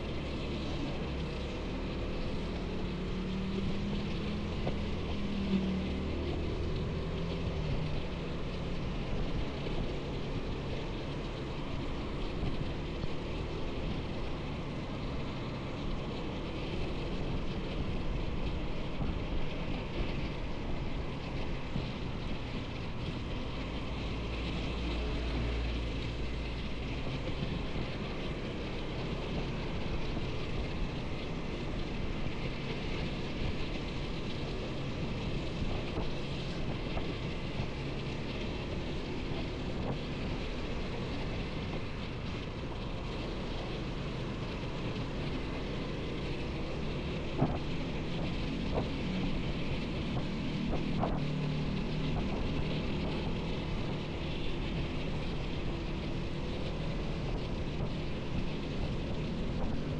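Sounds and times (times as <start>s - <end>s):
motorcycle engine hum: 0.0s - 59.9s
wind noise on microphone: 16.8s - 59.9s.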